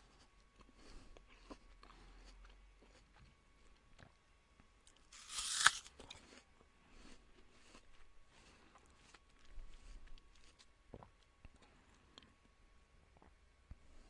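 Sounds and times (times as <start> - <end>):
apple crunching: 4.9 - 6.2.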